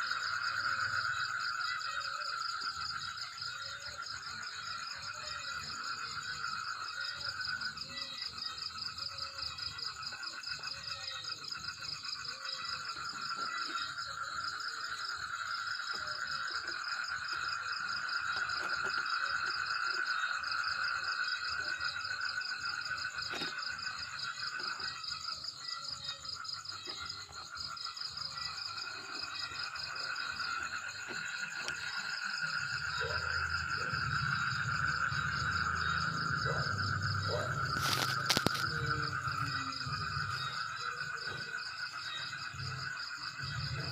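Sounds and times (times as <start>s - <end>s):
insects and frogs trilling: 0.0s - 43.9s.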